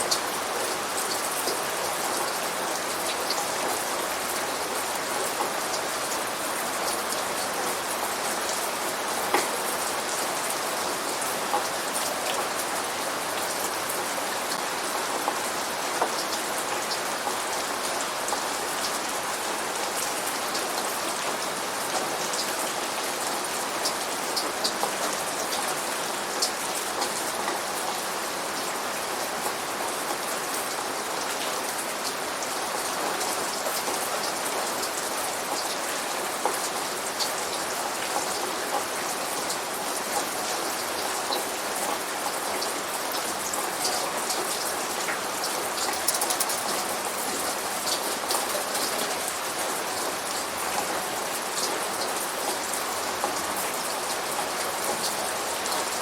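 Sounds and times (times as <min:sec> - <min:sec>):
heavy rain on hard surface: 0:00.0 - 0:56.0.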